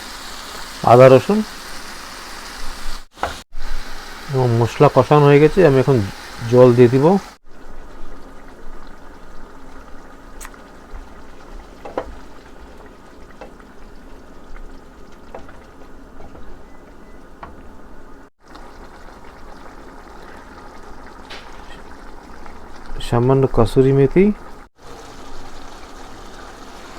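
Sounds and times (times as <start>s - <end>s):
gravy bubbling: 4.3s - 26.8s
water pouring into a pan: 18.4s - 23.4s, 24.7s - 26.9s.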